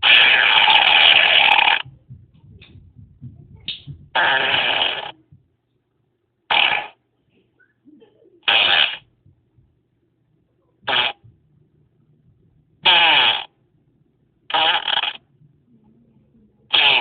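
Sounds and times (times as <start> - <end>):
fart sounds: 0.0 - 1.9, 4.1 - 5.2, 6.5 - 7.0, 8.5 - 9.1, 10.8 - 11.3, 12.8 - 13.6, 14.5 - 15.3, 16.7 - 17.0.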